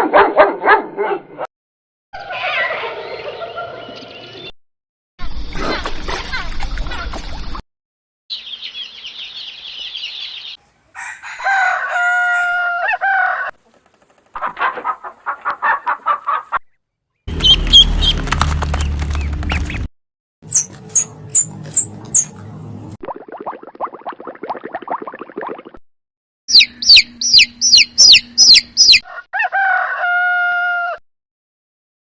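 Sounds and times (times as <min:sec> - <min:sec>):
rooster crowing: 0:10.9 - 0:13.6, 0:28.9 - 0:31.0
rapid clucks: 0:13.5 - 0:16.6
high twittering: 0:26.5 - 0:29.0.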